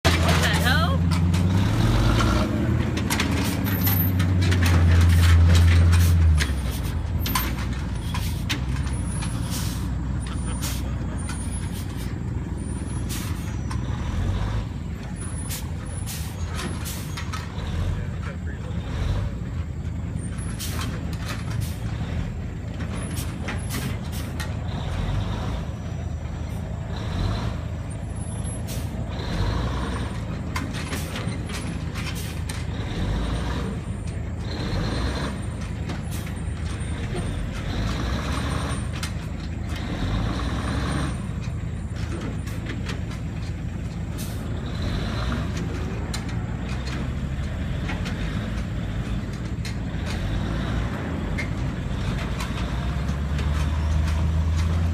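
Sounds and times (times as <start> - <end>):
sharp knocks and rattles: 0.0 - 12.6, 29.3 - 54.9
truck engine low rumble: 0.0 - 54.9.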